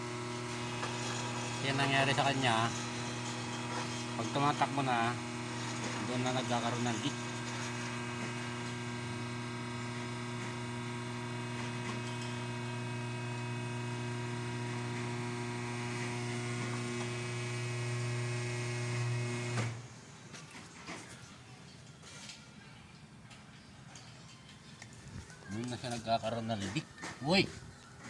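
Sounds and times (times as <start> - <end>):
steady motor hum: 0.0 - 19.9.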